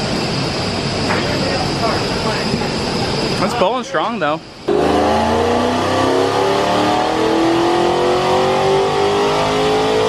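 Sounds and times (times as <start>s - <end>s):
car engine revving at full throttle: 4.7s - 10.0s.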